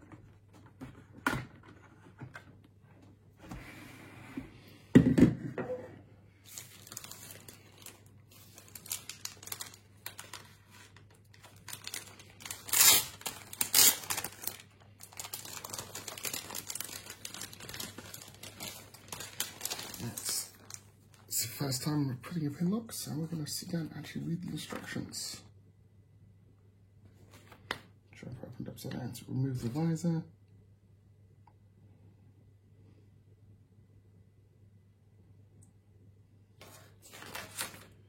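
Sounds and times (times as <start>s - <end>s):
packaging crinkling and rustling: 6.4s - 21.3s, 36.6s - 38.0s.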